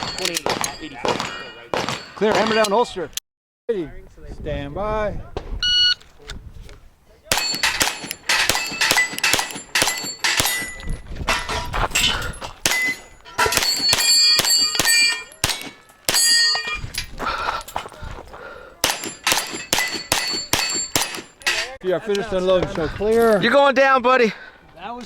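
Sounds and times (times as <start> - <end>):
steel targets clanging: 0.0 - 2.9, 7.3 - 17.1, 18.8 - 21.8
pistol shots: 7.3 - 10.7, 13.6 - 16.3.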